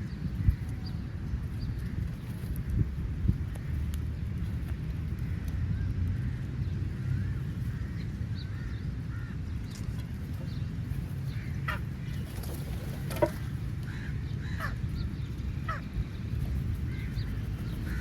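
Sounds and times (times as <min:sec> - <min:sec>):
steady low rumble: 0:00.0 - 0:18.0
crows cawing: 0:07.1 - 0:09.4, 0:11.3 - 0:12.2, 0:13.2 - 0:14.9, 0:15.6 - 0:16.0, 0:16.9 - 0:18.0.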